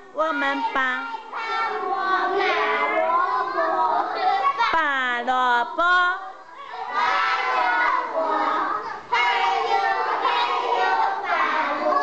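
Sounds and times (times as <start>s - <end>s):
children singing together: 0.3s - 4.8s, 6.4s - 12.0s.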